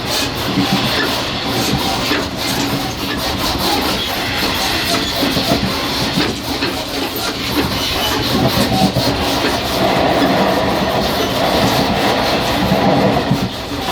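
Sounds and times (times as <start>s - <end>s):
train wheels rumbling on rail: 0.0s - 13.9s.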